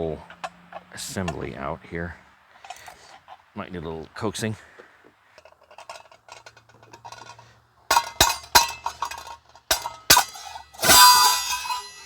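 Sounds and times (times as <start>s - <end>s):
faint metal rattling and ticking: 0.0s - 12.0s
sharp metal clinking knocks: 5.4s - 12.0s.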